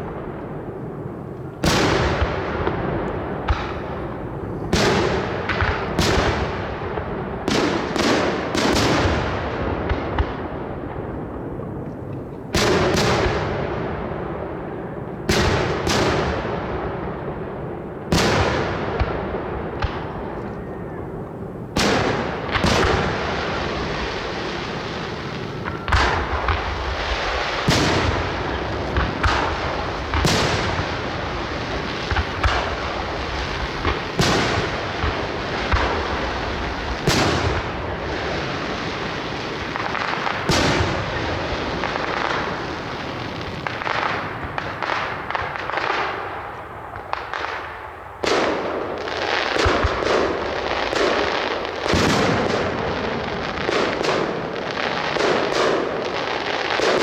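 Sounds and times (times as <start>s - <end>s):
fireworks crackling: 0.0s - 13.7s, 15.2s - 57.0s
fireworks bursting bangs: 0.0s - 57.0s
small firework pops: 19.8s - 20.7s, 25.4s - 37.8s, 39.6s - 48.7s.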